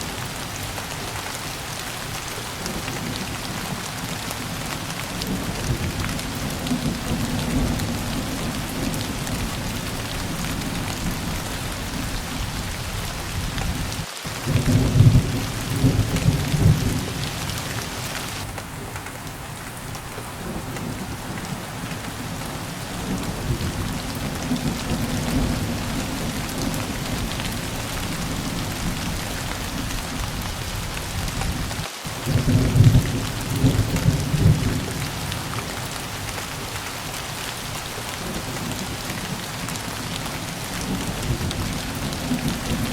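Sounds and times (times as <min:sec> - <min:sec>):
heavy rain falling: 0:00.0 - 0:42.9
thunder rumbling: 0:02.2 - 0:19.0, 0:20.1 - 0:36.8, 0:37.6 - 0:42.9.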